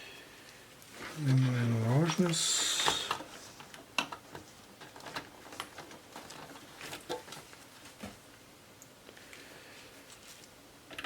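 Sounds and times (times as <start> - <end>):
cable handling clicks and rustling: 0.5 - 8.2.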